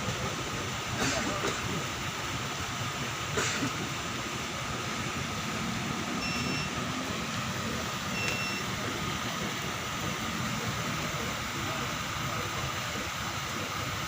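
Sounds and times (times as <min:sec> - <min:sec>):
background hum and hiss: 0:00.0 - 0:14.0
short high electronic beeps: 0:06.2 - 0:06.8, 0:08.1 - 0:08.8.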